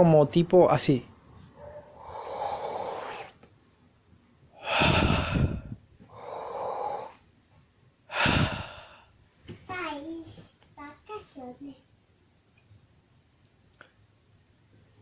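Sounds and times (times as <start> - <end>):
person breathing: 1.9 - 3.4, 4.6 - 7.2, 8.1 - 9.2.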